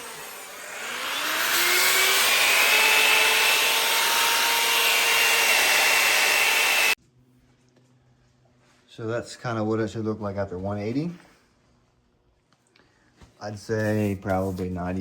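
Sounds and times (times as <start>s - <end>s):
grinder motor whine: 0.0s - 7.0s.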